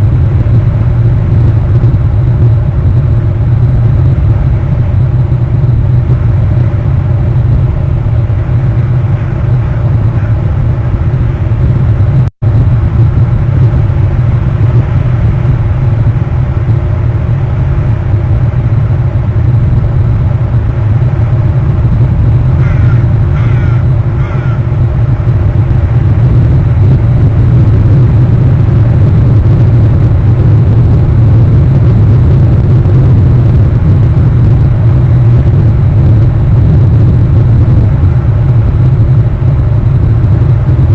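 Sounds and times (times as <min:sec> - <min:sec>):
loud low rumble: 0:00.0 - 0:40.9.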